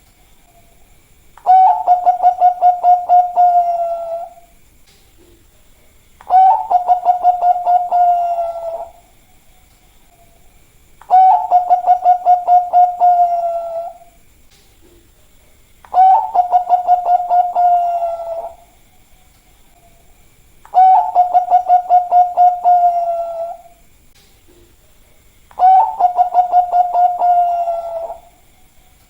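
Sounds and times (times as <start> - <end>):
dove cooing: 1.4 - 4.5, 6.2 - 9.1, 11.0 - 14.2, 15.9 - 18.8, 20.7 - 23.8, 25.5 - 28.4.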